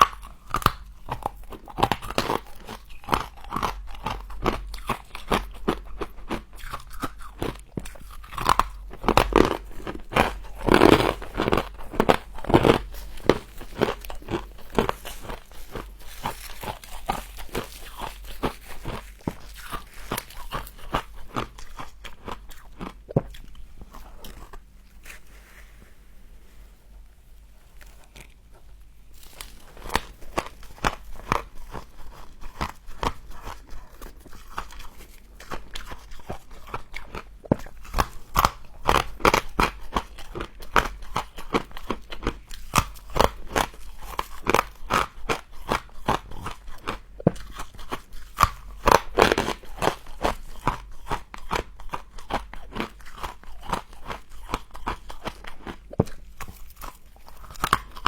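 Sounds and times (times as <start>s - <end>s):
crunching and chewing frost: 0.0s - 58.0s.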